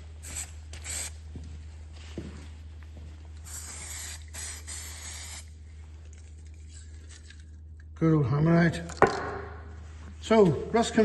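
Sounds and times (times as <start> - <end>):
aerosol spray can hissing: 0.2 - 1.2, 3.4 - 5.5.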